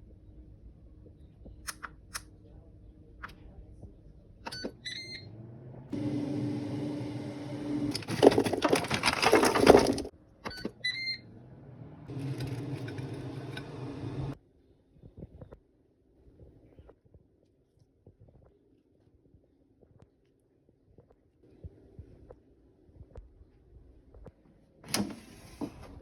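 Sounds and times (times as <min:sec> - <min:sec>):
motor hum: 0:05.0 - 0:10.1, 0:11.2 - 0:14.4.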